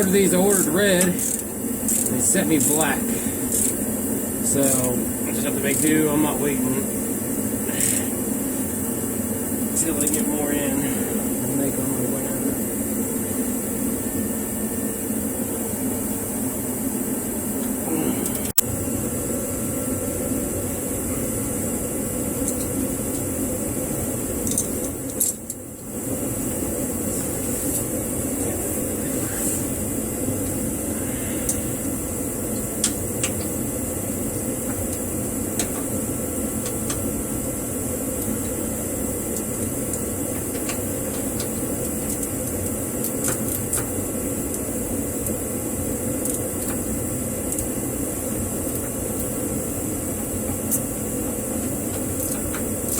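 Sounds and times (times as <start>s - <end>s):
mechanical hum and hiss: 0.0s - 52.9s.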